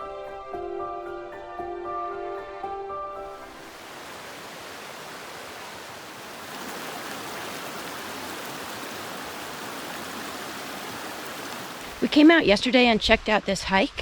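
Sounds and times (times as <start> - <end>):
creek water rushing: 3.4 - 12.5.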